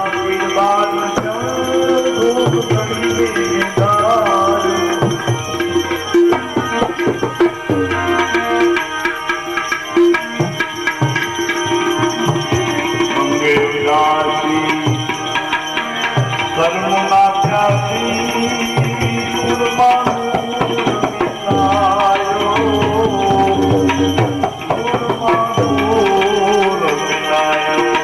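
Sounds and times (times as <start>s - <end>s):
held melodic notes: 0.0s - 28.0s
tabla drum strokes: 1.1s - 13.9s.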